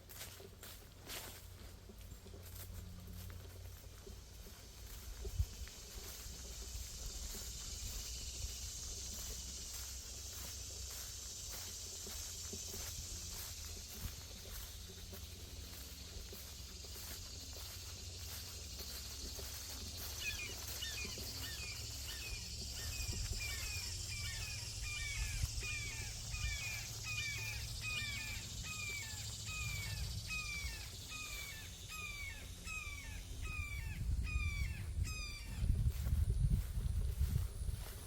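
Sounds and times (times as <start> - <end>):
high insect hiss: 0.0 - 38.0
bird calling: 19.0 - 35.6.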